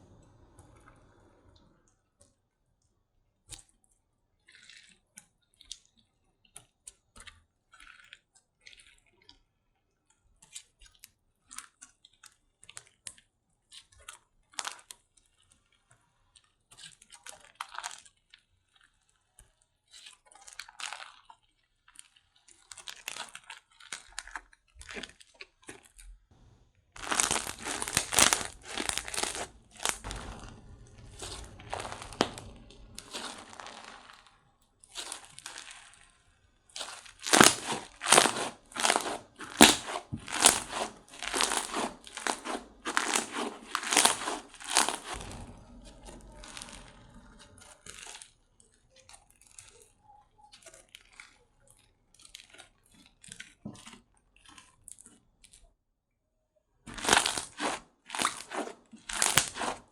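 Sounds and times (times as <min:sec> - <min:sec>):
slime being squished by hand: 0:27.0 - 0:48.3, 0:56.9 - 0:59.9.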